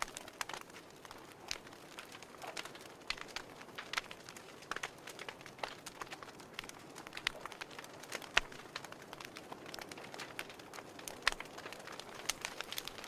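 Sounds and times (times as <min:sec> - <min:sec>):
fire crackling and popping: 0:00.0 - 0:13.0.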